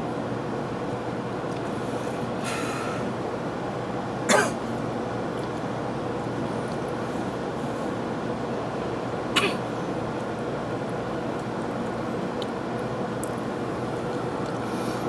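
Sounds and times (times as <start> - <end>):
person coughing: 4.3 - 4.6, 9.4 - 9.6.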